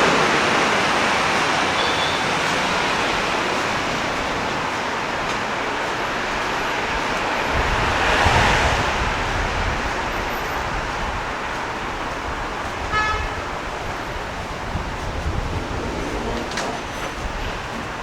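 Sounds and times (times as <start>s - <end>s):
city street traffic: 0.0s - 18.0s
vehicle passing close: 14.1s - 18.0s.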